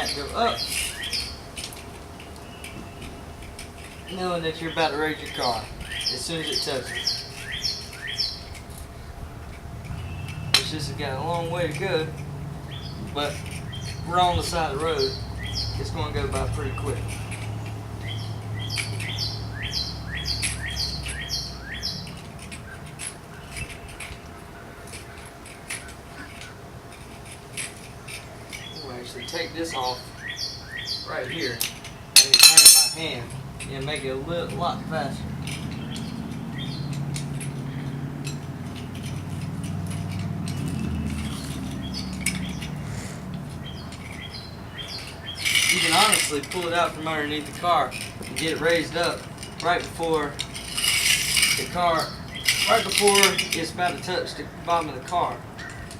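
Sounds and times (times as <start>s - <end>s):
birds chirping: 0.0s - 55.9s
car jack squeaking: 0.0s - 55.9s
low engine hum: 5.6s - 25.4s, 33.0s - 45.8s.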